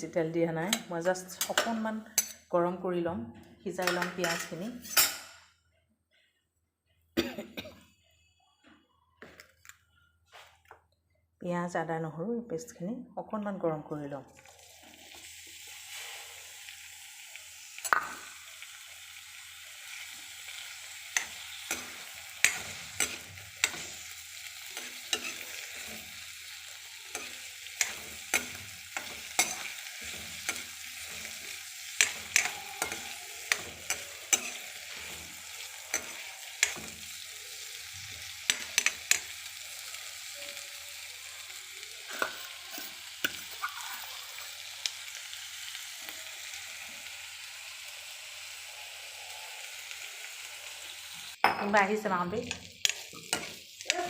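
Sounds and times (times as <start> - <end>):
onions sizzling in oil: 0.0 - 2.4, 14.4 - 54.0.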